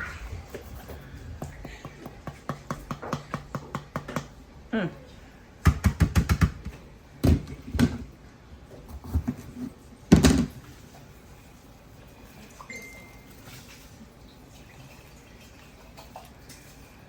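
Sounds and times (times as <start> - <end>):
thumps on a countertop: 10.1 - 10.6.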